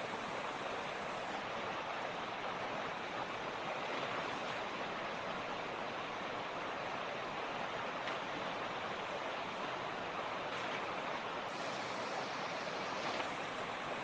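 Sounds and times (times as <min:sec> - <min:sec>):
creek running over rocks: 0:00.0 - 0:14.0.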